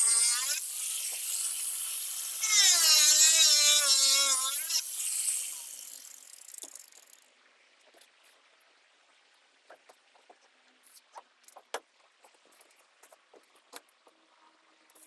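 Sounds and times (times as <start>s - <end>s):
power tool cutting: 0.0s - 7.1s.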